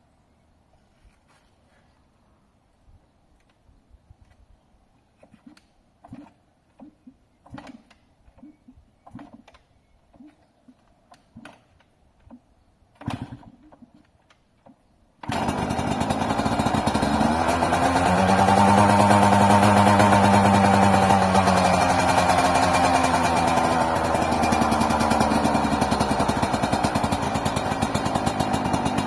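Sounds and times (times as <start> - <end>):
two-stroke engine running: 15.2 - 29.0.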